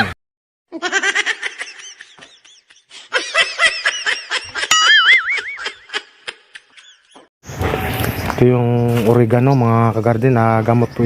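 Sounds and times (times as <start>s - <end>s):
high-pitched giggling laughter: 0.7s - 7.3s.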